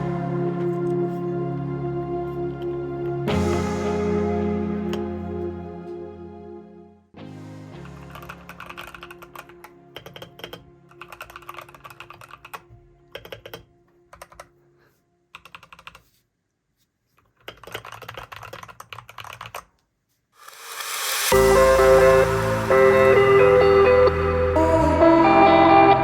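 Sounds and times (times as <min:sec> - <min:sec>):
soft background music: 0:00.0 - 0:16.0, 0:20.5 - 0:26.0
mechanical keyboard typing: 0:07.8 - 0:14.5, 0:15.3 - 0:16.1, 0:17.2 - 0:19.8.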